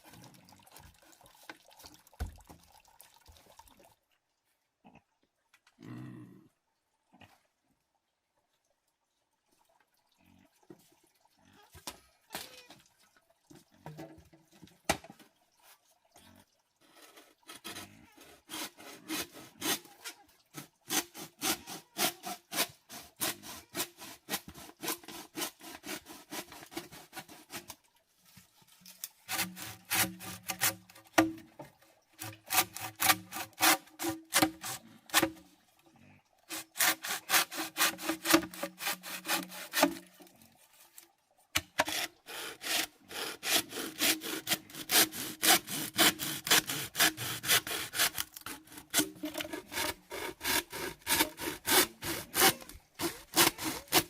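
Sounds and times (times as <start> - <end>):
hand saw scraping: 16.9 - 27.8, 29.0 - 31.4, 32.2 - 35.4, 36.5 - 40.1, 41.6 - 54.0.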